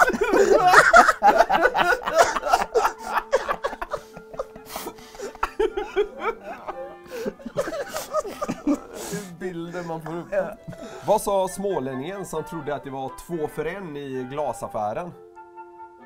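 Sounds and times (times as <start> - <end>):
people laughing: 0.0 - 11.2
quiet background music: 0.0 - 16.0.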